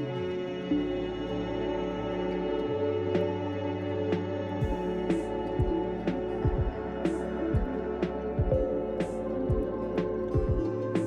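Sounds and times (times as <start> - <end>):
held synth chords: 0.0 - 11.0
deep kick-drum thumps: 4.6 - 4.9, 5.6 - 8.8, 9.5 - 10.8.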